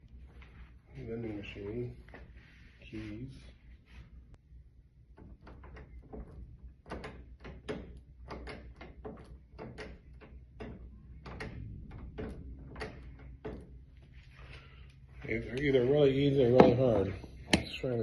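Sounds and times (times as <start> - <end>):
door rattling: 5.1 - 14.1.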